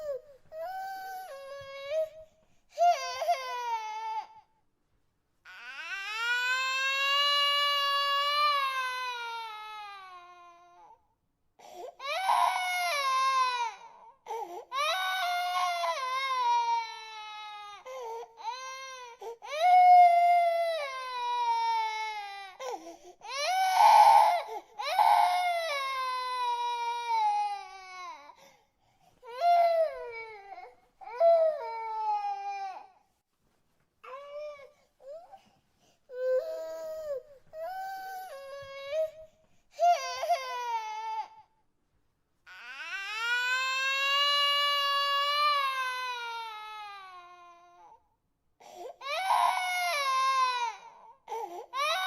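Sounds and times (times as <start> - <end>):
baby crying: 2.8 - 4.5, 12.0 - 28.4, 39.8 - 41.5, 49.0 - 52.0.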